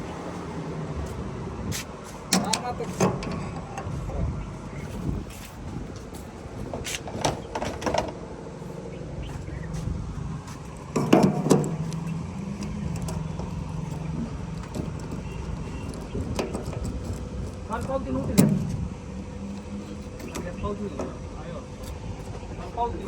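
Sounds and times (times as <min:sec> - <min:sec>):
vehicle engine running: 0:08.1 - 0:23.0
loud clunk: 0:11.0 - 0:13.6.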